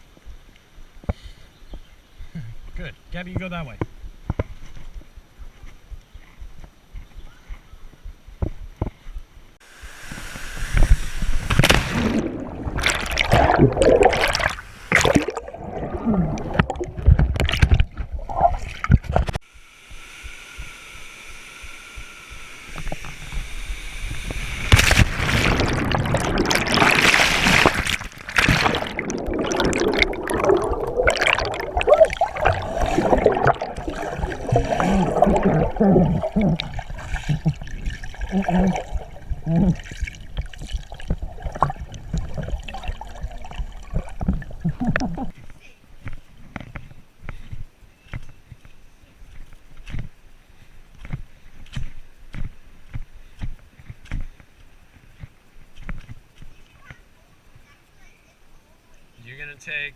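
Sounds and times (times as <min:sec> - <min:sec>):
water gurgling: 0:09.8 - 0:19.4, 0:22.7 - 0:45.6
water splashing and sloshing: 0:10.1 - 0:19.4, 0:24.6 - 0:47.7.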